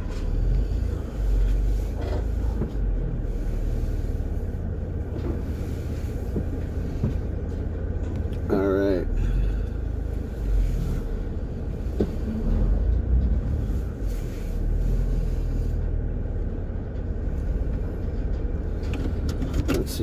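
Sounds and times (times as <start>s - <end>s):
vehicle engine rumbling: 0.0s - 20.0s.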